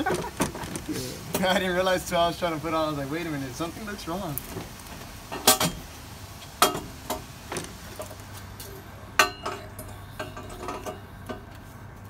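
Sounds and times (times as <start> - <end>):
hand tools clinking on metal: 9.2 - 11.5.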